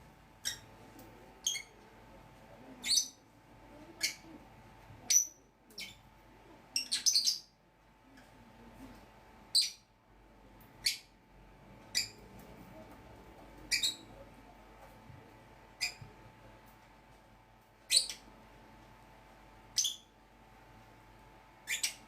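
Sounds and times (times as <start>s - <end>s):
small parrots chirping shrilly: 0.4s - 0.7s, 1.4s - 1.7s, 6.8s - 7.5s, 11.9s - 12.2s, 13.7s - 14.1s, 19.8s - 20.0s, 21.7s - 22.0s.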